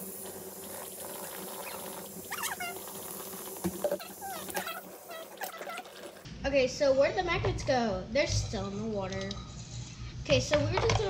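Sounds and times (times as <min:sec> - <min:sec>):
tap water running into sink: 0:00.0 - 0:06.2.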